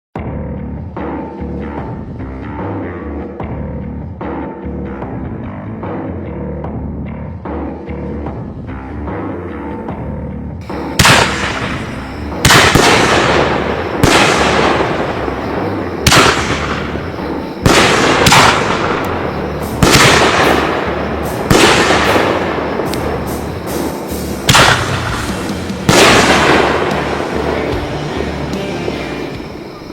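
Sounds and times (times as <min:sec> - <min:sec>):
music: 0:00.2 - 0:29.9
artillery shells bursting: 0:10.6 - 0:28.0.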